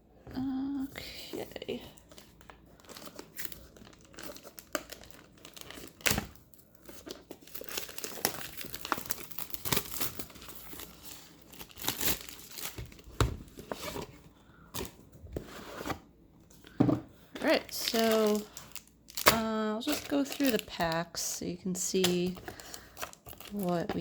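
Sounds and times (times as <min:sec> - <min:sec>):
plastic wrap crinkling: 0:01.3 - 0:14.2, 0:16.7 - 0:24.0
plastic wrap ripping: 0:02.8 - 0:13.1, 0:17.4 - 0:21.0, 0:22.0 - 0:24.0.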